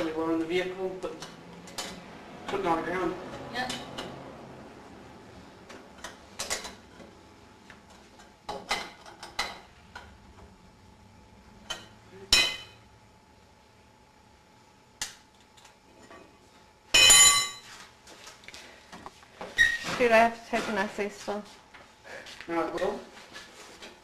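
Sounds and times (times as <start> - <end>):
loud ringing metal clank: 17.0 - 17.6.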